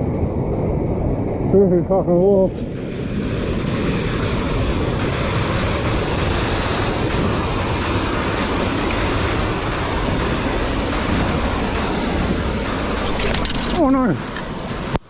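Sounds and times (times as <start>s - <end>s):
fast-flowing water roaring: 0.0s - 15.0s.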